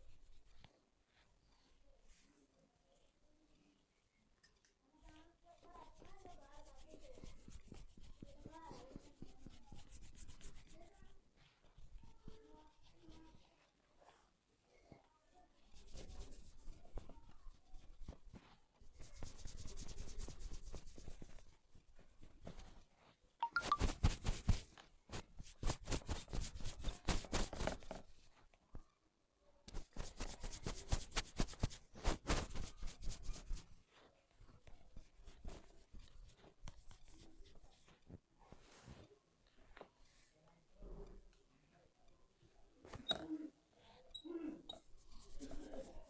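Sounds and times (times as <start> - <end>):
rapid percussive hand strokes on head: 5.6 - 13.4, 15.7 - 22.8, 23.4 - 28.3, 29.7 - 33.8, 34.6 - 38.0, 44.8 - 46.0
hands rubbing oiled hair: 23.4 - 27.9, 29.7 - 33.8, 44.8 - 46.0.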